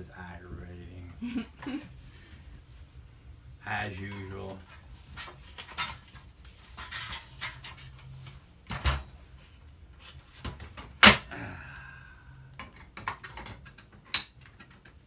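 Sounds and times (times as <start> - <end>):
tools clicking and scraping metal: 4.1 - 8.4, 12.6 - 15.0.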